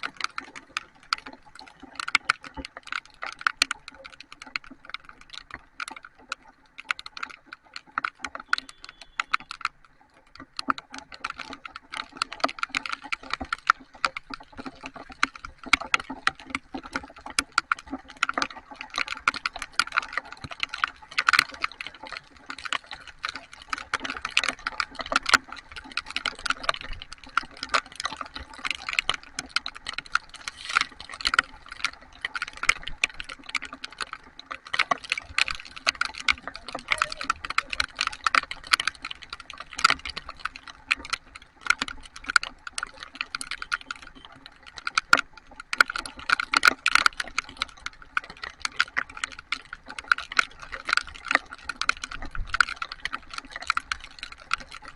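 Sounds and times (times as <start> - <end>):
raindrops ticking on hard surface: 0.0 - 54.9
steady patter of rain: 0.0 - 54.9.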